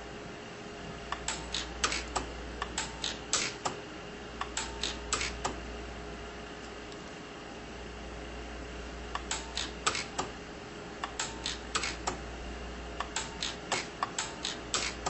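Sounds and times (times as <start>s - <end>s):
steady low hum: 0.0s - 15.0s
welder snapping pulses: 13.0s - 15.0s.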